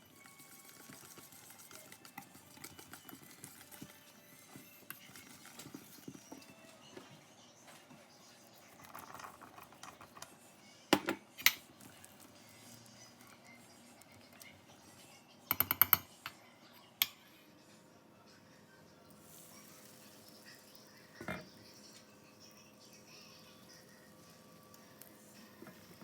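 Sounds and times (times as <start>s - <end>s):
utensils tapping and scraping: 0.2s - 6.5s, 8.8s - 10.3s, 15.5s - 16.1s.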